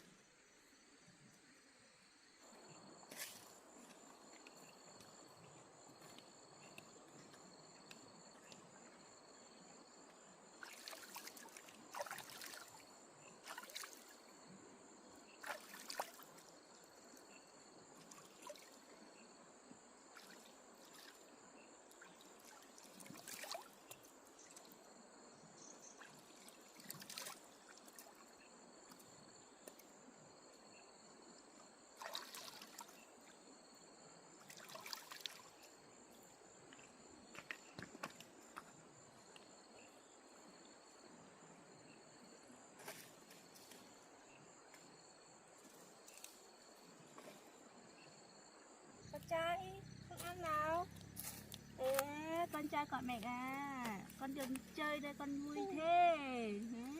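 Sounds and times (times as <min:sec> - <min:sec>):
insect chirring: 0:47.9 - 0:56.9.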